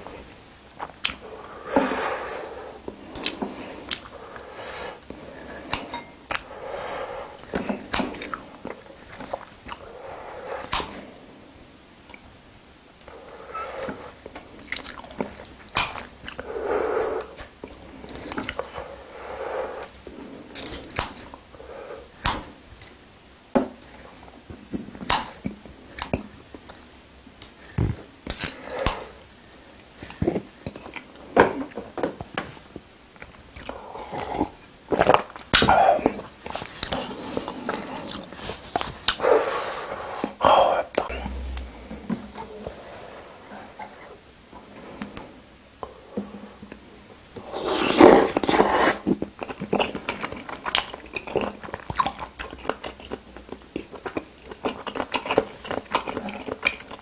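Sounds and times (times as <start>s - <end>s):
wet chewing and munching: 47.8s - 57.0s.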